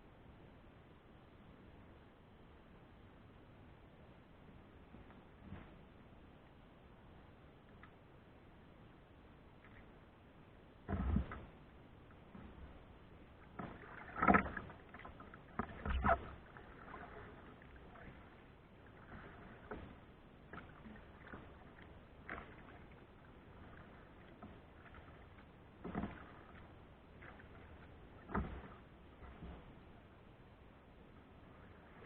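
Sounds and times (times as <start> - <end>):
faint steady hiss: 0.0 - 32.0
kayak paddle splashing in water: 13.4 - 29.8.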